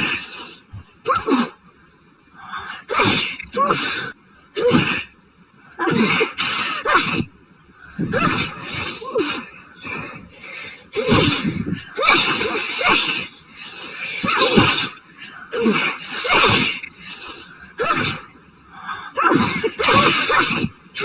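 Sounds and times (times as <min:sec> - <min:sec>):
woman sneezing: 0:00.0 - 0:00.5, 0:11.0 - 0:13.3, 0:14.0 - 0:15.0, 0:15.6 - 0:17.2, 0:19.2 - 0:20.8
wheezy breaths: 0:00.0 - 0:06.9, 0:07.7 - 0:21.0.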